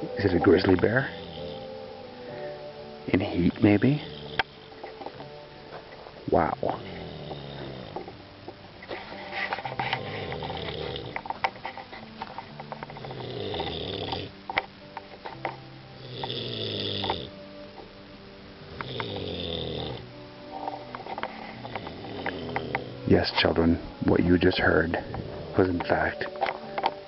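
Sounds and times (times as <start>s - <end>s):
man snoring: 1.0s - 1.7s, 3.3s - 4.6s, 6.6s - 8.1s, 10.0s - 11.2s, 13.0s - 14.3s, 16.0s - 17.3s, 18.6s - 20.1s, 21.6s - 23.0s.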